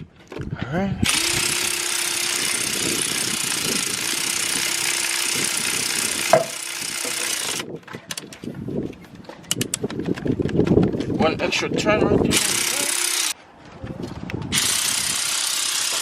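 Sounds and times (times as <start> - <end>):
power ratchet whirring: 1.0 - 8.3, 12.3 - 13.4, 14.5 - 16.0.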